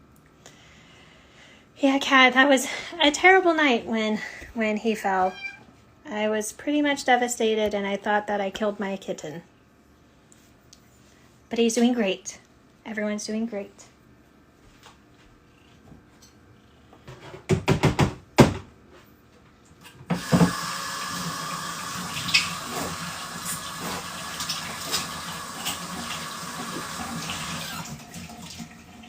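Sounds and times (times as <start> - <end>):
tap running water into sink: 20.0 - 29.0.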